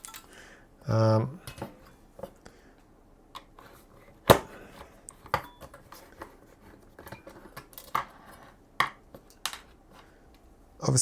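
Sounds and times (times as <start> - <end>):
light metal clicks and clinks: 0.0 - 0.4.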